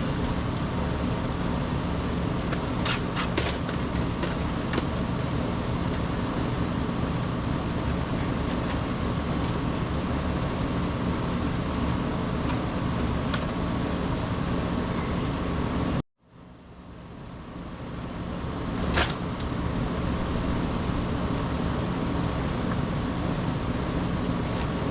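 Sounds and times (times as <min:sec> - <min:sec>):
droning low hum: 0:00.0 - 0:24.9.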